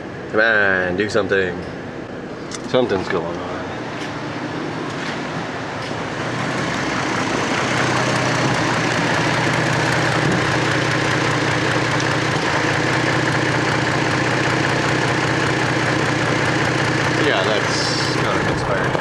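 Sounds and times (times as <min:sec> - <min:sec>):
car engine idling roughly: 0:06.4 - 0:19.0.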